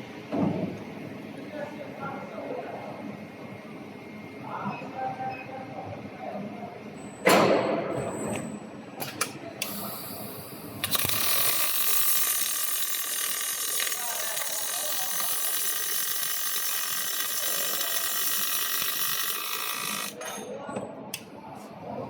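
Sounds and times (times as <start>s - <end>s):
arc welder sizzling hiss: 9.6s - 20.2s.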